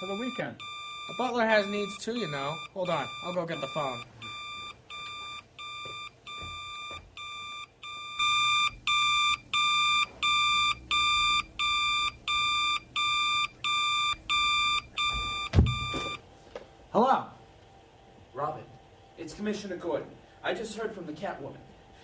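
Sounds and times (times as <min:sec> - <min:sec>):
telephone electronic beeping ring: 0:00.0 - 0:16.2.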